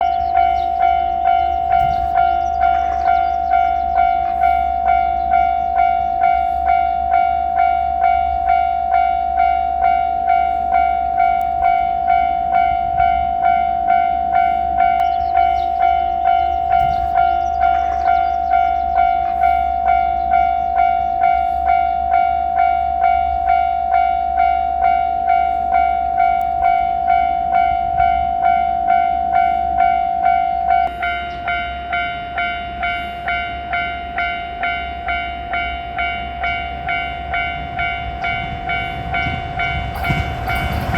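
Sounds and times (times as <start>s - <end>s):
electronic crossing bell dinging: 0.0s - 40.9s.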